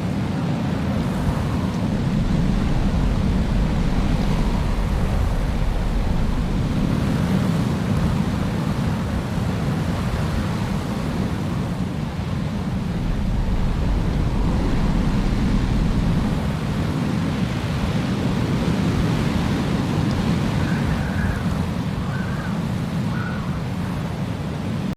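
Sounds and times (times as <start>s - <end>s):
blizzard wind blowing: 0.0s - 24.9s
faint high wind whistle: 12.7s - 17.2s, 19.0s - 23.8s.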